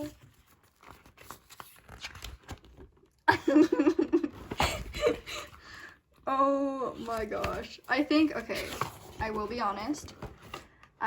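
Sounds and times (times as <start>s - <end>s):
paper rustling: 0.0s - 3.2s, 7.0s - 10.8s.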